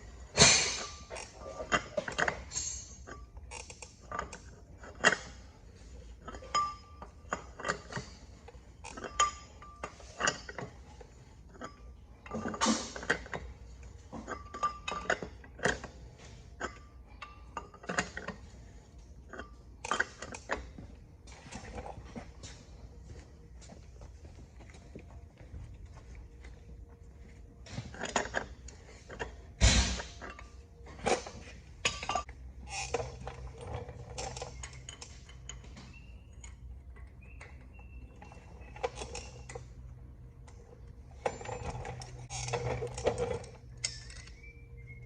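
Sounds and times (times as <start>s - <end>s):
metallic clinks and knocks: 0.4s - 23.2s.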